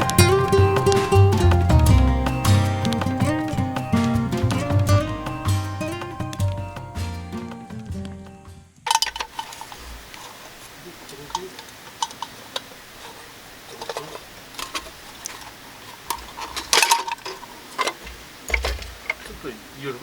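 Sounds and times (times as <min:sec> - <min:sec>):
small metal objects clinking: 0:08.9 - 0:10.5, 0:11.1 - 0:19.4.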